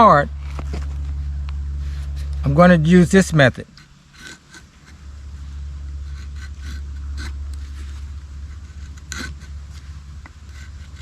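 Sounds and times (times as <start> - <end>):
low rumble: 0.0 - 11.0
knife scraping wood: 1.8 - 2.7, 3.6 - 11.0.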